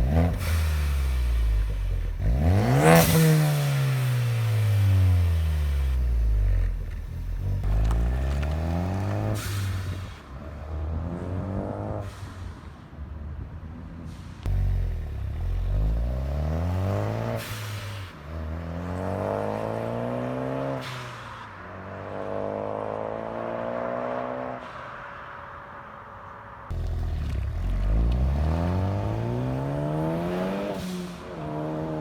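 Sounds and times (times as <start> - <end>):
car engine accelerating hard: 0.0 - 10.0, 14.5 - 18.0, 26.7 - 32.0.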